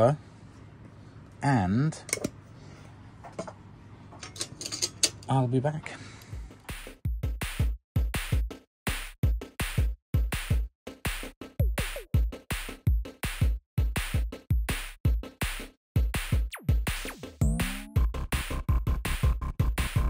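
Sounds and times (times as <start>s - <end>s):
electronic music with drum beat: 6.4s - 20.0s.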